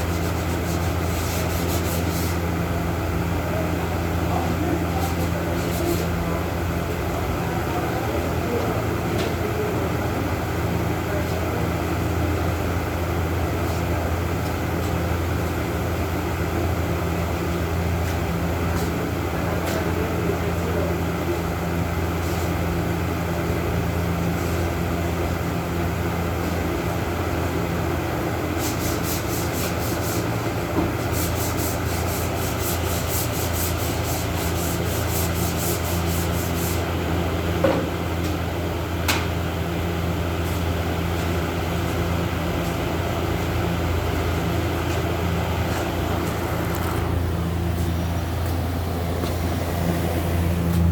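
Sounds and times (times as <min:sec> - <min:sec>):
sanding rasping on a surface: 0:00.0 - 0:02.4, 0:28.6 - 0:36.8.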